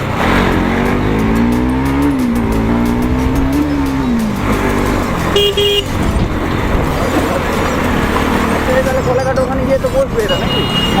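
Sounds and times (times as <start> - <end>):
motorcycle engine revving: 0.0 - 11.0
road and wind noise: 0.0 - 11.0
vehicle horn beeps: 5.3 - 6.0, 10.2 - 11.0.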